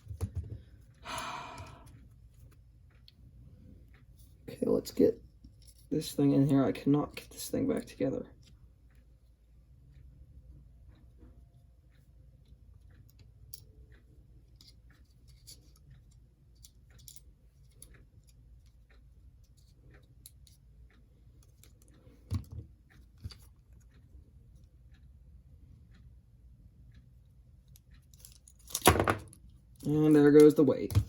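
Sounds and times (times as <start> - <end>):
small plastic parts clicking: 27.6 - 31.0.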